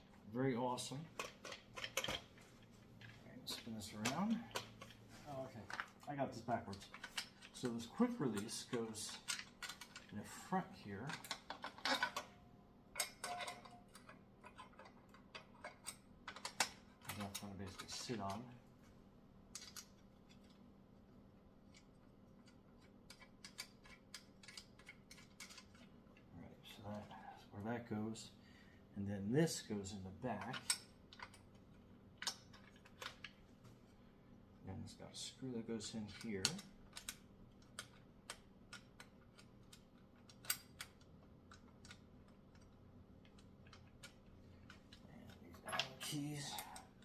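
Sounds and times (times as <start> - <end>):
metal hardware clicking: 1.0 - 2.3, 5.6 - 18.5.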